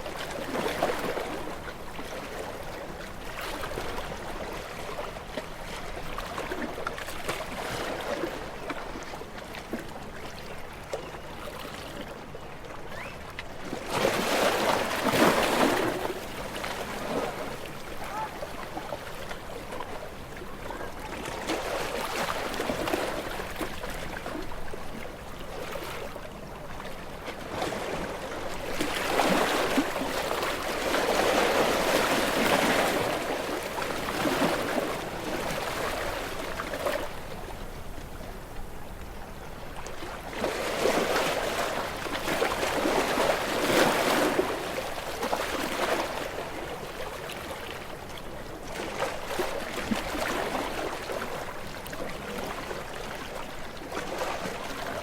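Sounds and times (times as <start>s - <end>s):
small waves washing onto shore: 13.0s - 55.0s.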